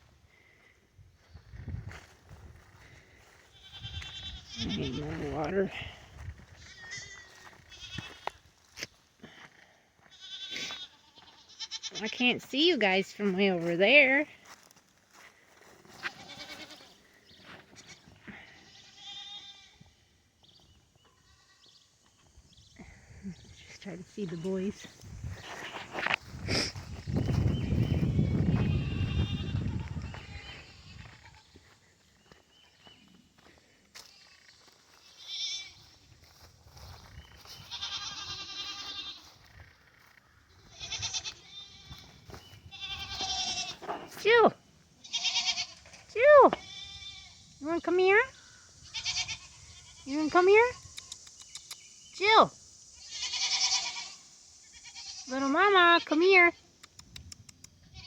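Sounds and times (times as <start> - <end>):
distant goats bleating: 3.4 - 5.9, 6.6 - 8.4, 10.0 - 12.2, 15.9 - 17.2, 17.8 - 20.0, 21.0 - 21.8, 27.8 - 31.6, 35.0 - 35.9, 37.4 - 39.4, 40.6 - 44.0, 45.0 - 47.4, 48.8 - 50.1, 53.0 - 56.1.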